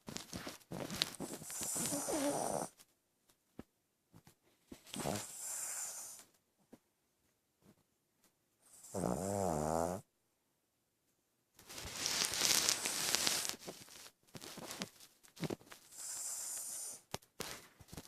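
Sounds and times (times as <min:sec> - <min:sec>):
dog snoring: 0:01.2 - 0:02.8, 0:04.9 - 0:06.2, 0:08.7 - 0:10.1, 0:15.9 - 0:17.0.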